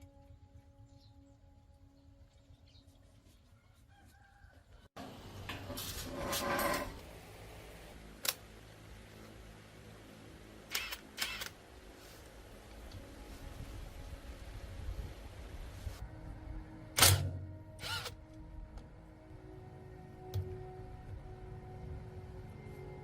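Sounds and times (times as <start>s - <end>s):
rooster crowing: 3.6s - 4.9s.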